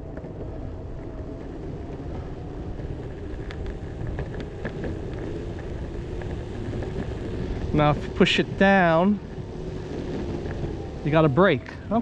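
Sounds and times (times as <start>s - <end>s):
skateboard wheel rumble: 0.0s - 12.0s.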